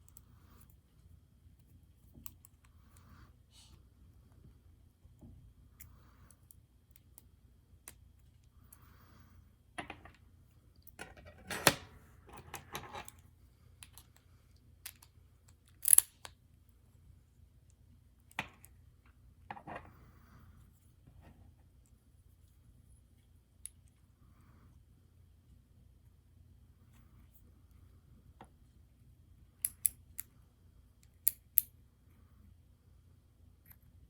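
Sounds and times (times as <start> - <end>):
metallic clicks of lock parts: 14.8 - 16.3, 29.6 - 30.3, 31.0 - 31.7.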